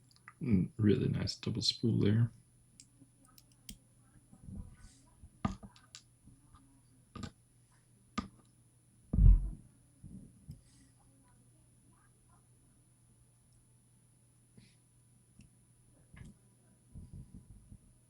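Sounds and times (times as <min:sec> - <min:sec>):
deep thump: 0:09.2 - 0:09.6.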